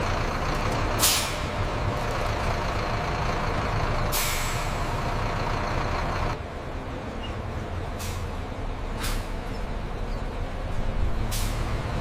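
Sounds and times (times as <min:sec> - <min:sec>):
bus engine running: 0:00.0 - 0:12.0
air brake hisses: 0:01.0 - 0:01.5, 0:04.1 - 0:04.8, 0:08.0 - 0:08.3, 0:09.0 - 0:09.3, 0:11.3 - 0:11.7.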